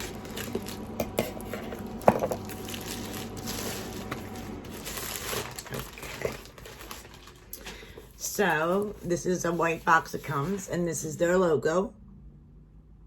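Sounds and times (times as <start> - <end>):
packaging crinkling and rustling: 0.0 - 9.9.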